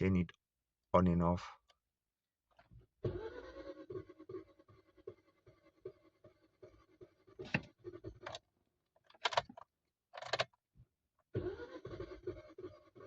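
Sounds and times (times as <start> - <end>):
starter motor cranking engine: 3.0 - 8.4, 11.3 - 13.0
car keys rattling in ignition: 9.0 - 10.5.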